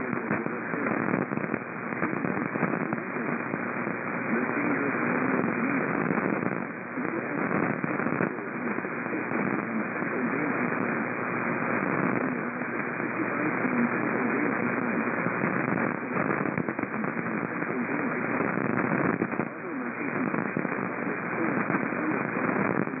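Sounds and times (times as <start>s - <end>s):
faint wavering voice: 0.0s - 18.6s
radio static hiss: 0.0s - 23.0s.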